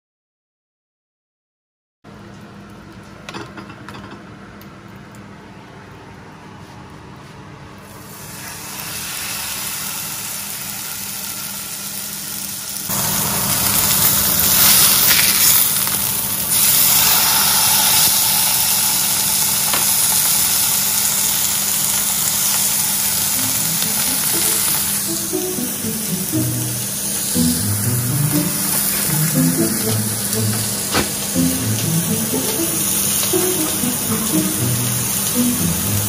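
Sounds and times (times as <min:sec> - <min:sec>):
steak sizzling in a frying pan: 0:08.1 - 0:36.0
background music: 0:23.4 - 0:36.0.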